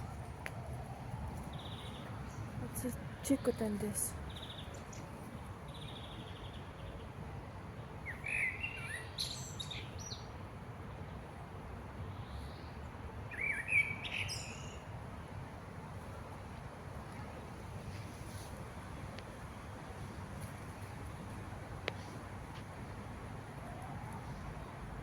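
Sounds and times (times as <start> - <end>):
thrushes chirping: 1.3 - 7.0.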